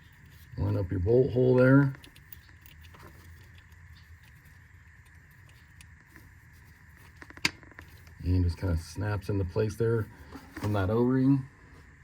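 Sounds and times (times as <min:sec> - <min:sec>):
light ticks and scrapes: 0:01.5 - 0:08.2.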